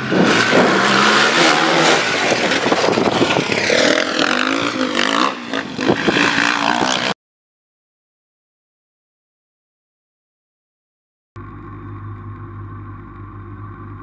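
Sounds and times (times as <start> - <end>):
race car engine at high revs: 0.0 - 7.1.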